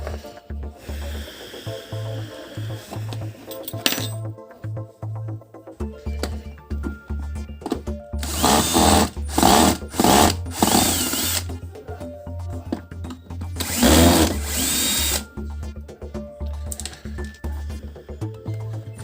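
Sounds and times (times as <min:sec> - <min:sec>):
cordless drill whirring: 0:08.2 - 0:11.5, 0:13.6 - 0:15.2.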